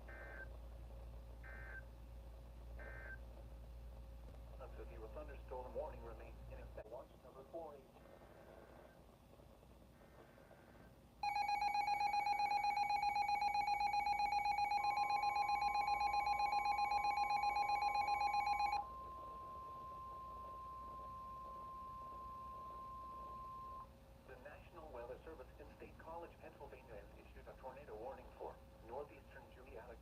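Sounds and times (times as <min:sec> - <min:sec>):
steady warning alarm tone: 0:02.8 - 0:03.2, 0:11.2 - 0:23.9.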